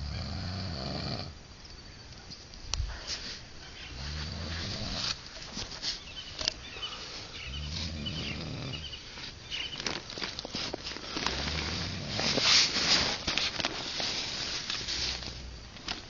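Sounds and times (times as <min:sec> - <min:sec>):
man snoring: 0:00.0 - 0:01.4, 0:07.5 - 0:08.9.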